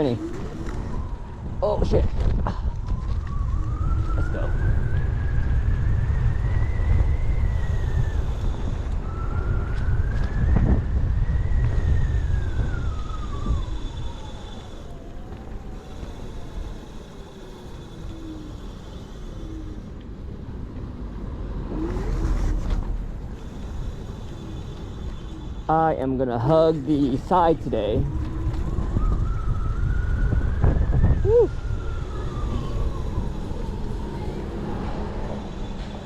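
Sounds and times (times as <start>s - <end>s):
electric scooter motor whining: 0.0s - 36.0s
wind rumble on microphone: 0.0s - 36.0s.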